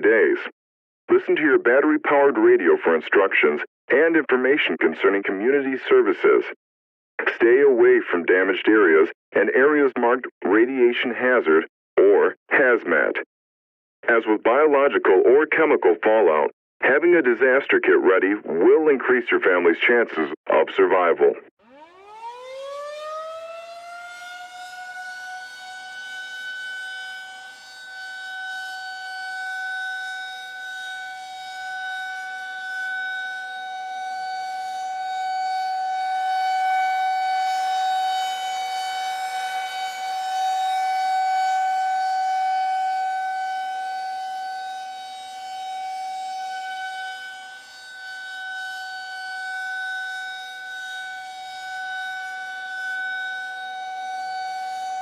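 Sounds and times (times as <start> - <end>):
air-raid siren: 21.6 - 55.0.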